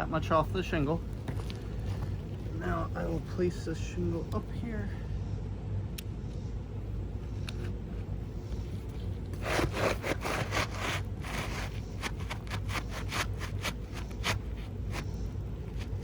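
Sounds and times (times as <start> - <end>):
shingle scraping on shingles: 9.3 - 16.0.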